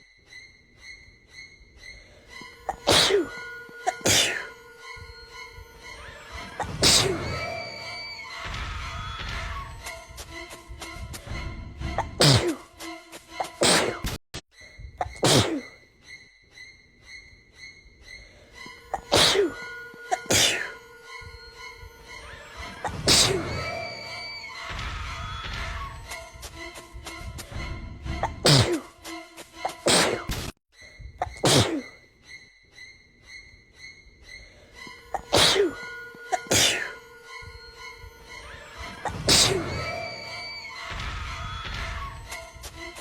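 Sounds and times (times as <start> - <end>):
background music: 1.8 - 14.1, 18.4 - 30.4, 33.6 - 43.0
person sneezing: 2.7 - 4.6, 6.6 - 7.5, 12.0 - 12.6, 13.6 - 14.1, 15.0 - 15.8, 19.0 - 20.8, 22.8 - 23.8, 28.2 - 28.9, 29.8 - 30.4, 31.2 - 32.0, 35.1 - 37.0, 39.1 - 40.0.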